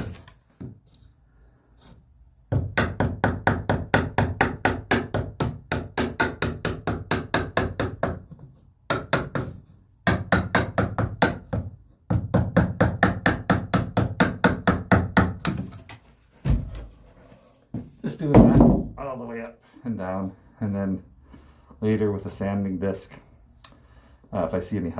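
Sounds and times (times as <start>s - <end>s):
hammer knocking wood: 2.5s - 8.2s, 8.9s - 15.6s, 18.3s - 19.0s.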